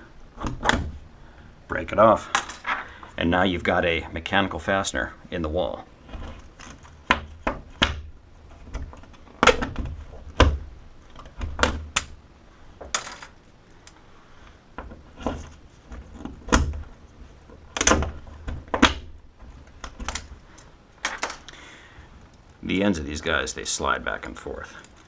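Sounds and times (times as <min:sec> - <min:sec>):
sharp clicks and knocks: 0:14.8 - 0:21.6.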